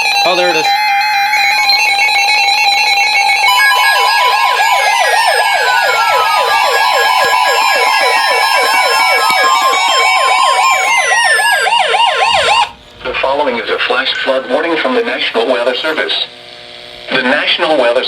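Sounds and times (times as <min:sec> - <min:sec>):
warbling siren-like alarm: 0:00.0 - 0:16.4
steady alarm tone: 0:00.0 - 0:17.7
falling tone: 0:03.0 - 0:16.2.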